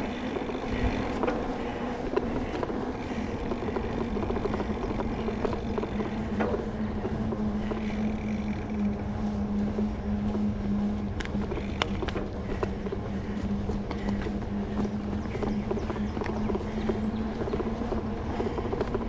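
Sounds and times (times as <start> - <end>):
bike tyres rolling on wet pavement: 0.0 - 9.0, 11.1 - 19.0
faint clicks: 2.0 - 9.0, 11.2 - 19.0.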